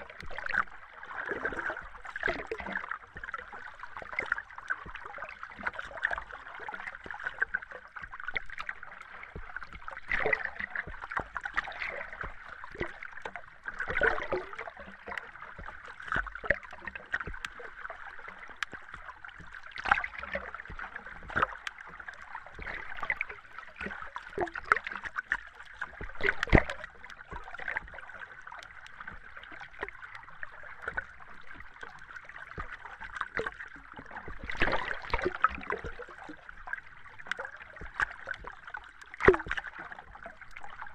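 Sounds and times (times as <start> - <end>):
bubbling pops and gurgles: 0.0 - 40.9.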